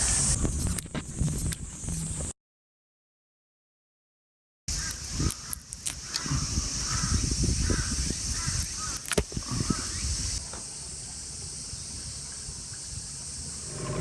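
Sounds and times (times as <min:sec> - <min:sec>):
birds calling: 0:04.7 - 0:10.4.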